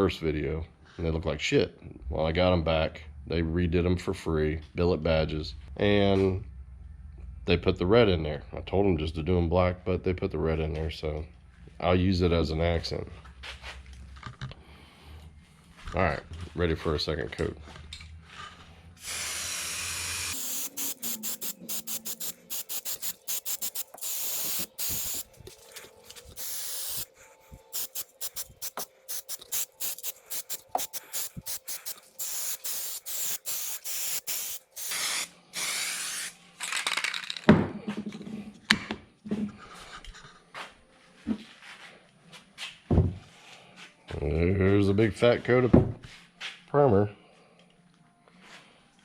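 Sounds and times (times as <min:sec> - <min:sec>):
spray can hissing: 0:19.0 - 0:27.1, 0:27.7 - 0:36.4.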